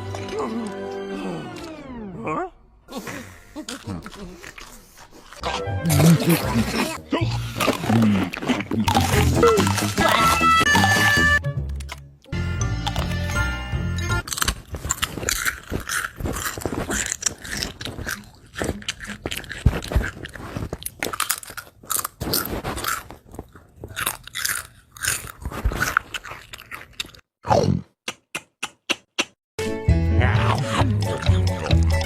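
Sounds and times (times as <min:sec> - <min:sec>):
crunchy chewing: 0:03.5 - 0:11.2, 0:14.2 - 0:27.3.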